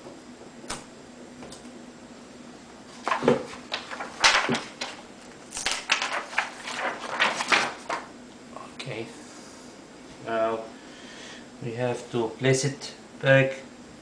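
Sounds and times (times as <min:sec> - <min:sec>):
plastic tape peeling crackle: 0:03.0 - 0:08.0.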